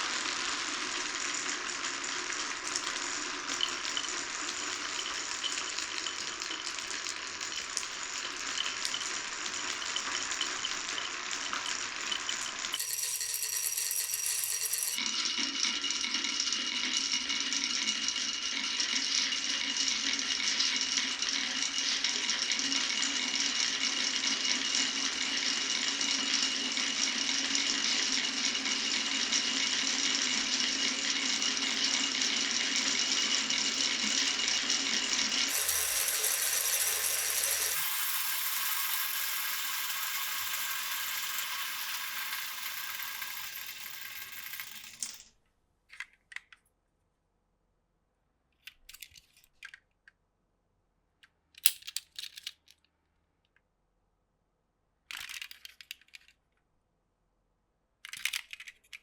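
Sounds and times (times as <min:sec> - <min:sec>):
glass marbles rattling in wooden run: 0:02.2 - 0:15.1, 0:31.1 - 0:45.2.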